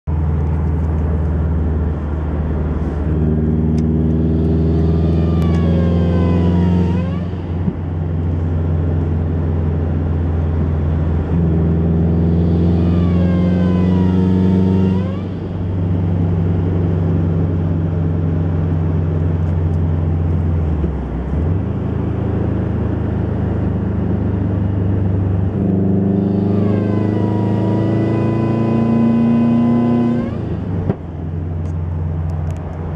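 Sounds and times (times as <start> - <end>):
turbocharged engine pulling: 0.1 - 32.9.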